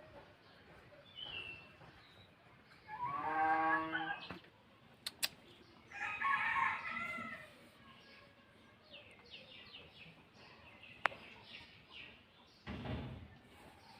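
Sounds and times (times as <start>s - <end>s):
sharp click: 5.0s - 5.4s.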